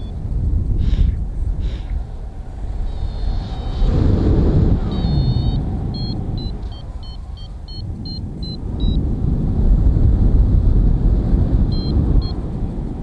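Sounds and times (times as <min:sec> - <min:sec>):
wind rushing over microphone: 0:00.0 - 0:13.0
variometer beeping: 0:04.9 - 0:09.0, 0:11.7 - 0:12.5.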